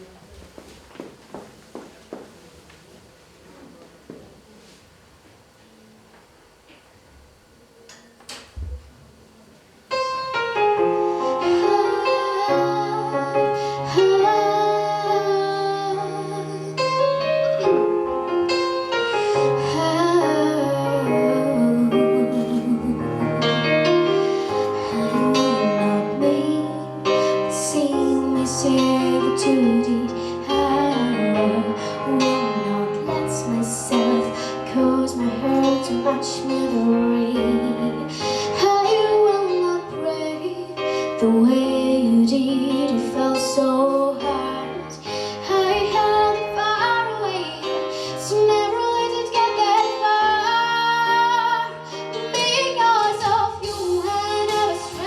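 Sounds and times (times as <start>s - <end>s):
slow piano ballad: 8.5s - 55.0s
woman singing: 11.3s - 17.3s, 19.6s - 23.3s, 24.7s - 55.0s.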